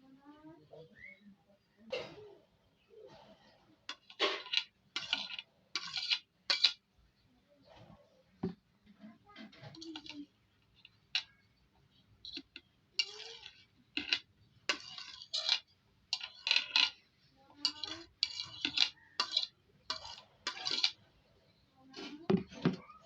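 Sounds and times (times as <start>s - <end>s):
metal utensils clinking and scraping: 3.2s - 6.9s, 9.4s - 21.2s.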